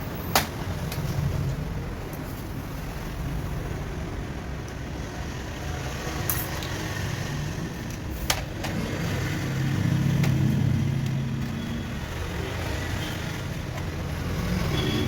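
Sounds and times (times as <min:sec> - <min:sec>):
motor vehicle traffic rumble: 0:00.0 - 0:15.0
vehicle passing: 0:08.6 - 0:15.0.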